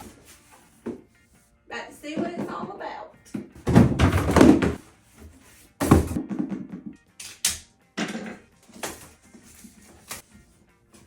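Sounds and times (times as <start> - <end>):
background music: 0.0 - 11.0
packaging rustling and knocking: 5.8 - 6.2.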